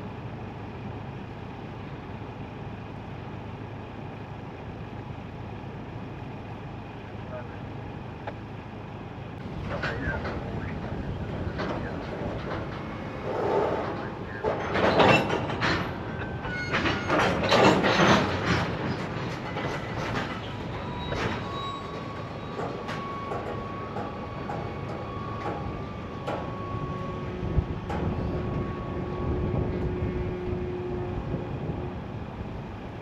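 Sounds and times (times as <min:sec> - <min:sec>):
freight train cars rolling: 0:00.0 - 0:33.0
clanks and clicks: 0:09.4 - 0:26.8, 0:27.8 - 0:28.7
thin steady squeal: 0:09.8 - 0:18.3, 0:18.9 - 0:32.0.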